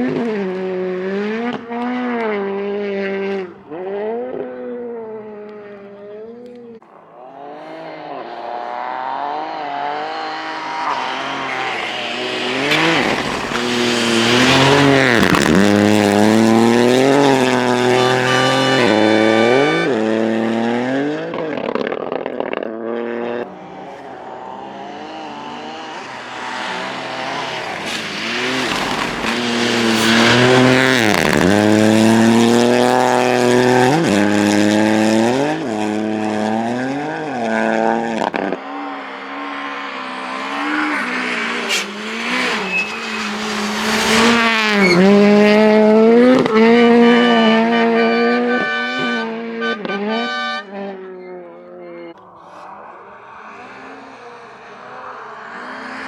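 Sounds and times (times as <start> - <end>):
rally car engines revving: 0.0 - 56.0.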